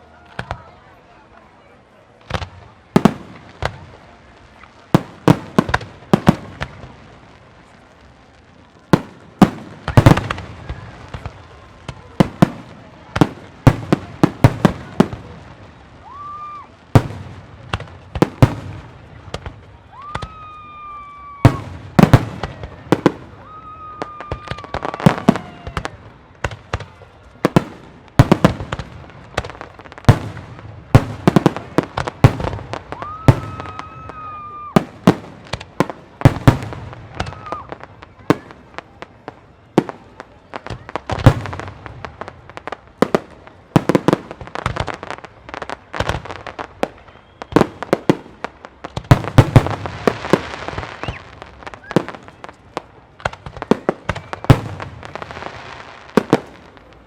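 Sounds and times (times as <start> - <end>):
firework whistles: 32.4 - 34.9, 46.9 - 48.2, 49.3 - 52.5, 53.8 - 55.8.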